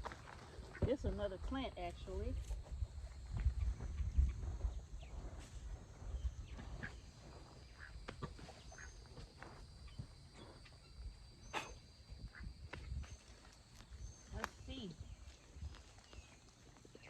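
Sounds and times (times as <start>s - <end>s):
bird chirps: 6.1s - 17.0s.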